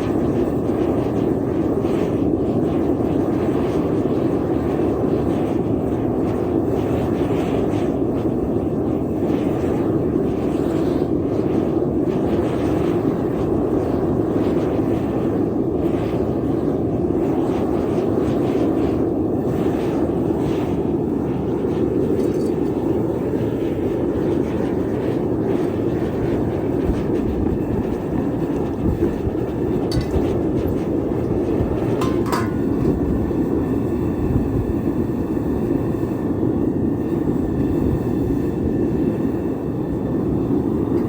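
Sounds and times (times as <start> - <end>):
gas burner rumbling: 0.0 - 41.0
metallic clinks: 22.2 - 22.8, 29.9 - 30.8.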